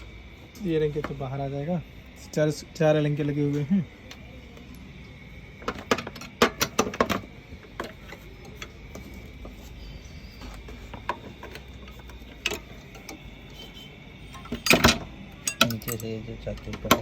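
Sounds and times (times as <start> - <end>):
metal parts clicking and clinking: 5.7 - 9.5, 11.0 - 13.2, 14.3 - 17.0.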